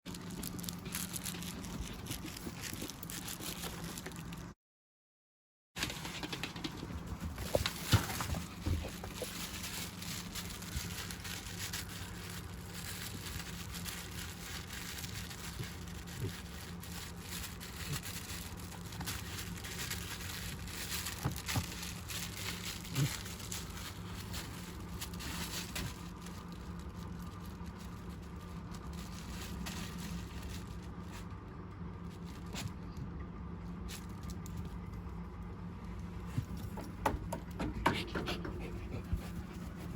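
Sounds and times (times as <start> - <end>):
dog playing with toy: 5.8 - 31.2
steady low hum: 5.8 - 39.9.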